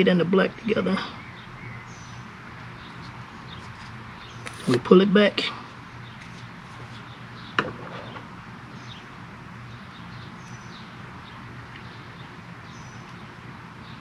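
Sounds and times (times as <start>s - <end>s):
birds chirping: 0.3s - 5.0s.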